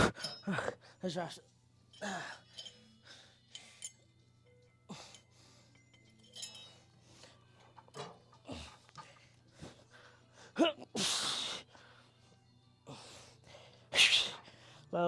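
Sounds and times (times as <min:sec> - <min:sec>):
faint background music: 0:00.0 - 0:15.0
light metallic clinks: 0:01.9 - 0:07.0.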